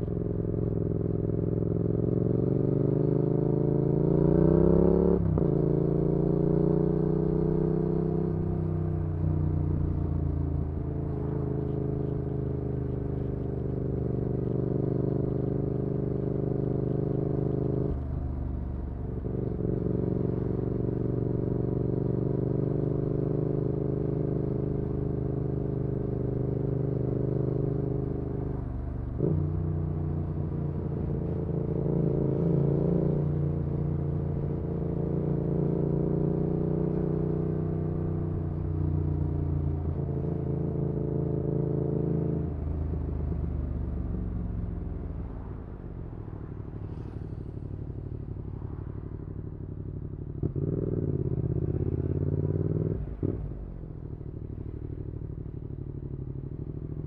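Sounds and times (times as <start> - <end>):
motorcycle engine while riding: 0.0 - 57.0.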